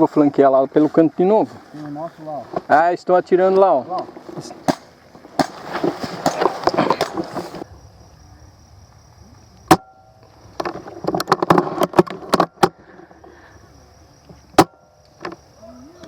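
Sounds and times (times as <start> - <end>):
rustling and crunching brush: 0.0 - 7.8, 10.1 - 13.6.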